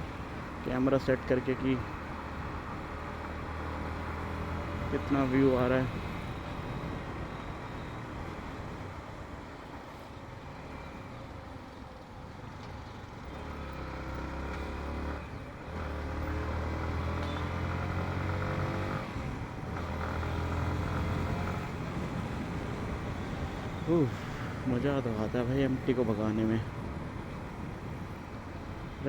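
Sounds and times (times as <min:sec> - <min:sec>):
motorcycle engine accelerating: 0:13.3 - 0:24.0.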